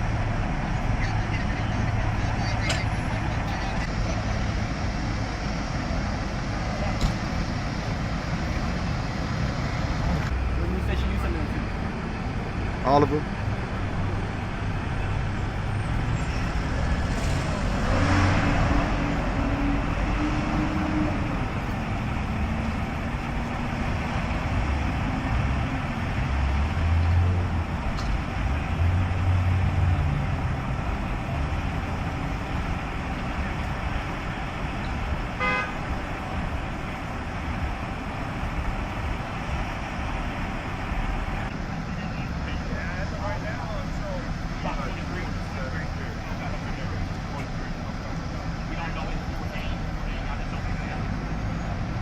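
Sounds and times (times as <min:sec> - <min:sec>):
vehicles passing: 0:00.0 - 0:52.0
horn beep: 0:35.4 - 0:35.8.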